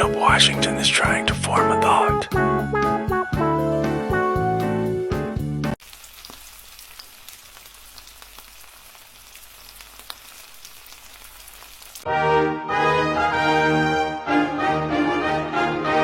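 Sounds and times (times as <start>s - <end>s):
music: 0.0s - 5.8s, 12.1s - 16.0s
crackling hiss with clicks: 5.8s - 12.0s.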